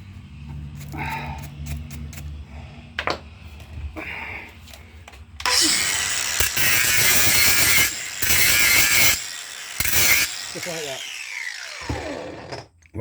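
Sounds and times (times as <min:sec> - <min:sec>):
power tool running loudly: 0:05.4 - 0:12.7.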